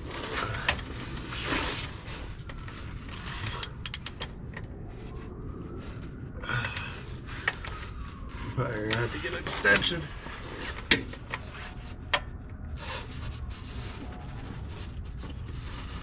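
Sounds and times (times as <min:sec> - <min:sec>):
wrench metal clicks: 0:03.6 - 0:04.3
heavy breathing: 0:06.4 - 0:07.7.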